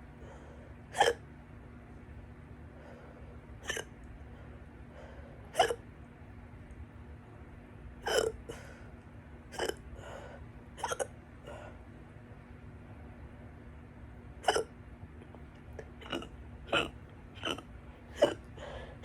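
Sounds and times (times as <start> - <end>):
person hiccuping: 0.9 - 1.2, 3.6 - 3.9, 5.5 - 5.8, 8.0 - 8.4, 9.5 - 9.8, 10.8 - 11.2, 14.4 - 14.7, 16.0 - 18.5.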